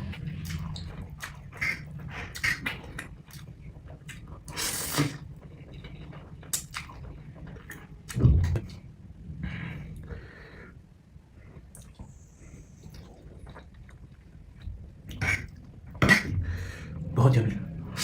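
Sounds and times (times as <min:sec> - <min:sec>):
noodle slurp: 0:04.5 - 0:05.3.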